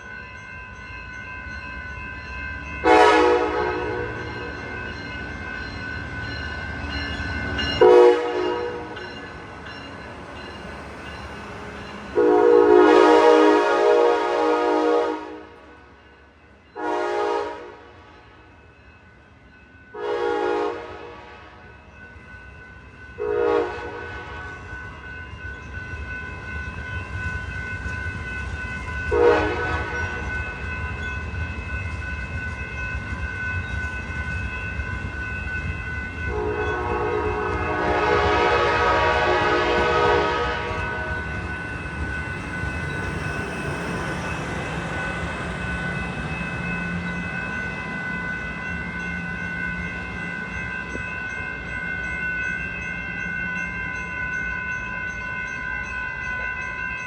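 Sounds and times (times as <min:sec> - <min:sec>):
low train rumble: 0:00.0 - 0:57.0
train horn blasts: 0:02.8 - 0:04.5, 0:07.8 - 0:09.0, 0:12.2 - 0:15.8, 0:16.8 - 0:18.4, 0:20.0 - 0:21.7, 0:23.2 - 0:24.7, 0:29.1 - 0:30.3, 0:36.3 - 0:41.4.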